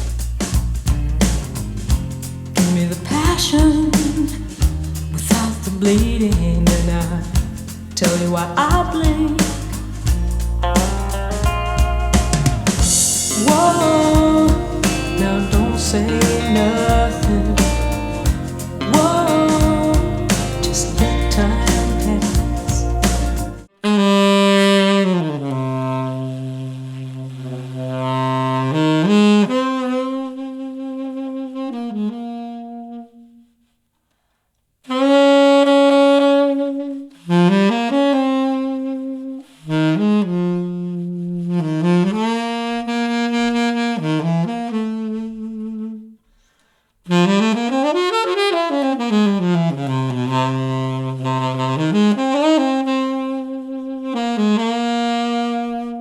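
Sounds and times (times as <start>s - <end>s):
solo saxophone music: 10.6s - 33.7s, 34.9s - 46.3s, 47.1s - 56.0s.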